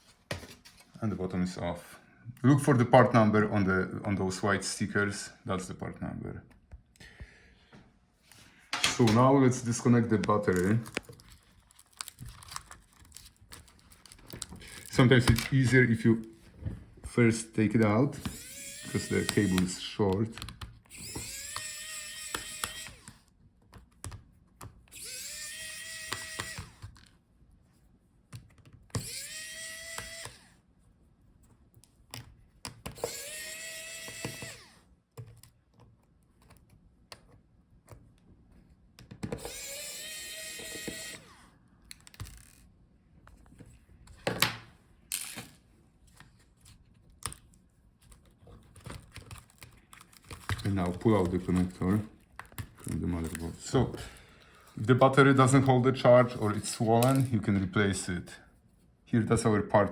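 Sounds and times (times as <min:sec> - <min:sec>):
electric screwdriver whirring: 0:18.2 - 0:19.9, 0:20.9 - 0:23.2, 0:24.9 - 0:27.0, 0:28.9 - 0:30.6, 0:32.9 - 0:34.8, 0:39.2 - 0:42.6.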